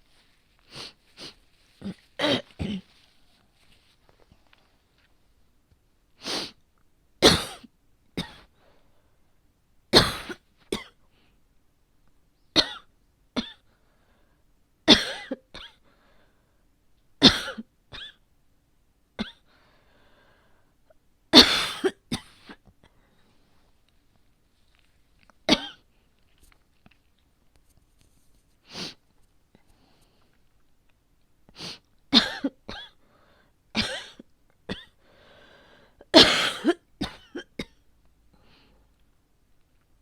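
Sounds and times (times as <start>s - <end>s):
woman coughing: 1.8s - 2.9s, 7.2s - 7.6s, 10.0s - 10.9s, 14.9s - 15.8s, 17.2s - 18.2s, 21.4s - 22.6s, 25.5s - 25.8s, 32.2s - 33.0s, 33.8s - 35.0s, 36.0s - 37.8s.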